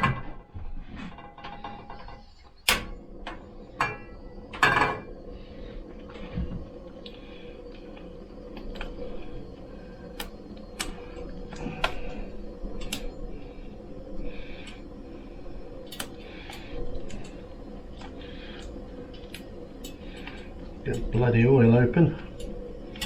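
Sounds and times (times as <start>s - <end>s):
pans clinking and knocking: 0.0s - 2.8s, 3.8s - 5.1s
steady hum: 0.0s - 23.0s.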